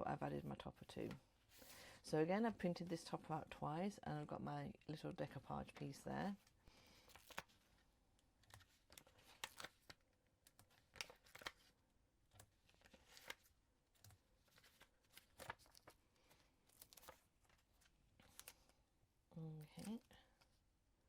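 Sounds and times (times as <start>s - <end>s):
paper rustling and tapping: 8.4s - 11.7s, 12.3s - 18.7s.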